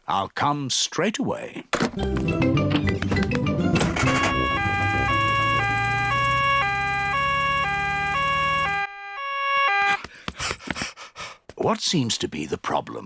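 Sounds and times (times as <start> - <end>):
cartoon two-tone siren: 3.7 - 10.0
vehicle engine hum: 3.9 - 8.8.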